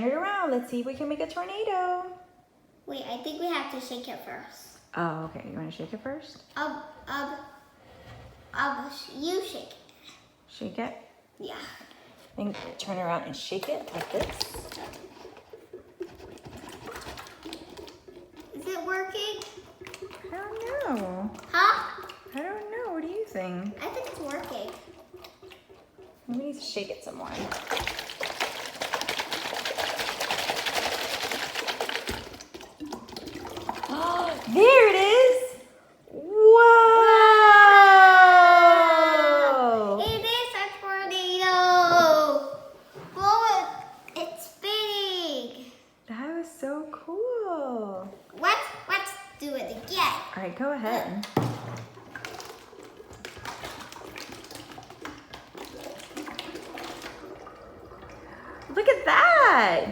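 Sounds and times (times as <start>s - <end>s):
water sloshing in shaken bottles: 12.2s - 35.5s, 48.0s - 59.9s.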